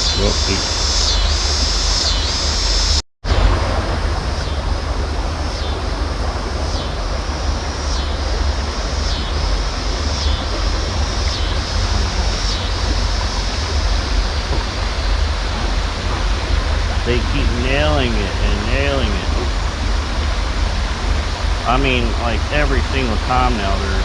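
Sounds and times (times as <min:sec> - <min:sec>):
high steady hiss: 0:00.0 - 0:24.0
river water rushing: 0:03.3 - 0:24.0
wind buffeting microphone: 0:03.3 - 0:24.0.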